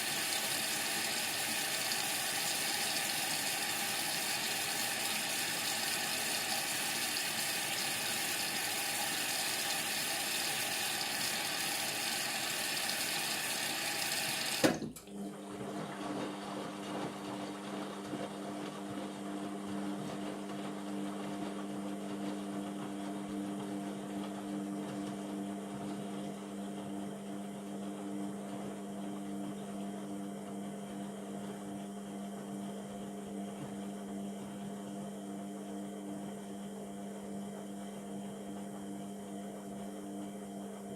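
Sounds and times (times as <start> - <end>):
washing machine water rushing: 0.0 - 27.0.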